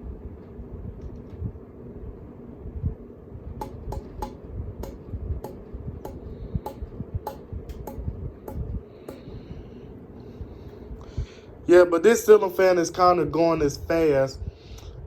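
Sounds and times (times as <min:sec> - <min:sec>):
ceiling fan air rushing: 0:00.0 - 0:15.0
sharp clicks: 0:03.6 - 0:09.2.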